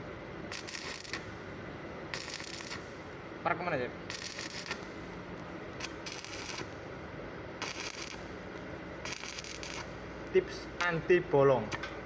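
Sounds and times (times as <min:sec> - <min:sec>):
welding arc crackling: 0:00.5 - 0:01.5, 0:02.1 - 0:07.0, 0:07.6 - 0:11.0.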